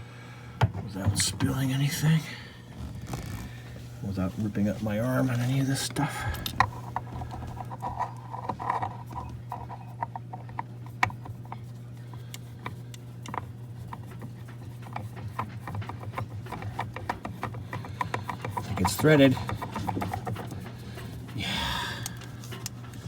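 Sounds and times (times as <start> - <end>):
steady low hum: 0.0 - 23.0
fuel filter clicks and scrapes: 0.6 - 23.0
heavy breathing: 2.2 - 4.1, 6.0 - 7.7, 20.6 - 23.0.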